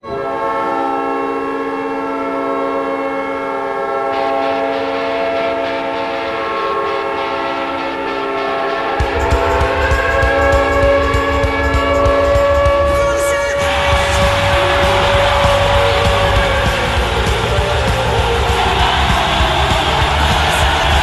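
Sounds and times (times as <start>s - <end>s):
goal horn chord: 0.0s - 21.0s
noisy cheering layer: 5.1s - 21.0s
low beat: 9.0s - 21.0s.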